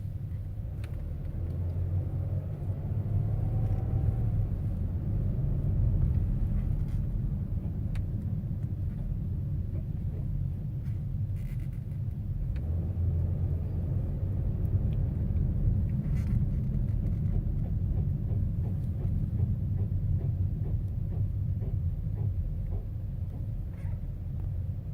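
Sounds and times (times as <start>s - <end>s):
car driving low rumble: 0.0s - 24.9s
light knocking from car: 16.6s - 23.9s.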